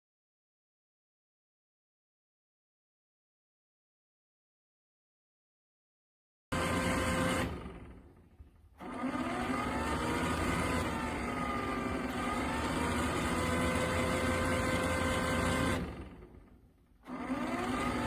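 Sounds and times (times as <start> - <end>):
motor whirring: 6.6 - 8.1, 8.8 - 16.4, 17.1 - 18.0.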